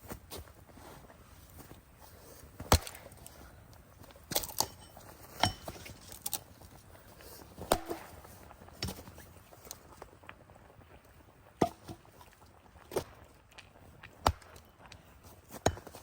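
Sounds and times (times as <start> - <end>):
firewood being chopped: 2.6 - 3.3, 4.0 - 6.5, 7.6 - 9.1, 11.6 - 12.1, 12.9 - 13.3, 14.1 - 16.0.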